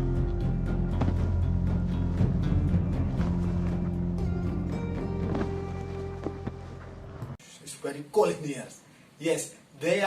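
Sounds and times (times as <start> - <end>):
background music with steady beat: 0.0 - 7.4.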